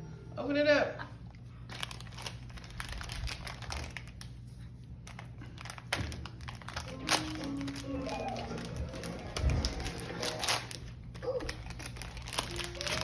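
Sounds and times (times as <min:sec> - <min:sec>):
background music: 0:00.0 - 0:00.9, 0:06.8 - 0:10.7
packaging crinkling: 0:01.6 - 0:13.0.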